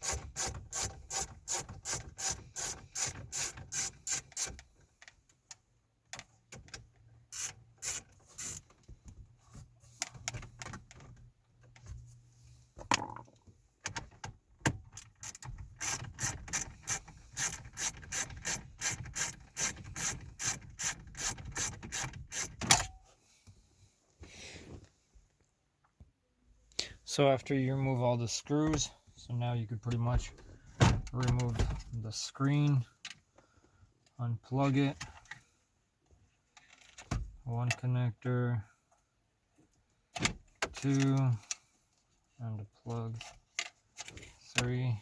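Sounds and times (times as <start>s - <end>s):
ratchet clicking: 15.2s - 22.6s.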